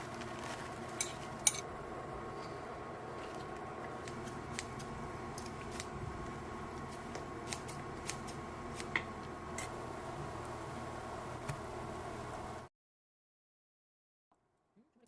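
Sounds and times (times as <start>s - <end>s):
steady background hum: 0.0s - 12.7s
utensils tapping dishes: 1.0s - 1.7s.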